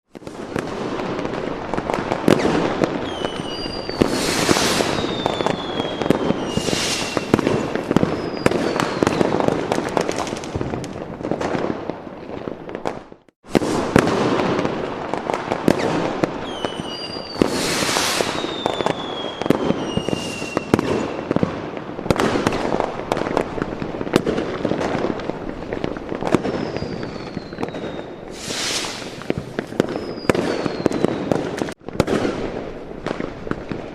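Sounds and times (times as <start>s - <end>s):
firecrackers crackling: 0.1s - 33.9s
fireworks hissing bursts: 1.8s - 10.8s, 15.6s - 21.2s, 26.4s - 31.8s
falling firework whistles: 2.2s - 10.5s, 15.6s - 21.4s, 26.2s - 31.8s.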